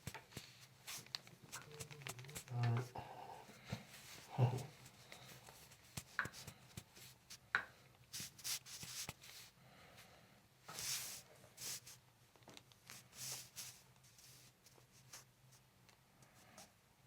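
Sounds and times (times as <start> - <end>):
rustling and rubbing: 0.0 - 2.9, 3.5 - 7.4, 8.1 - 9.6, 10.7 - 12.0, 12.8 - 15.7.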